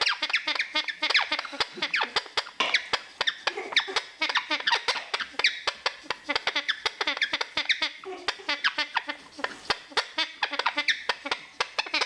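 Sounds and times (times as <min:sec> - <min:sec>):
parrot quacking calls: 0:00.0 - 0:12.0.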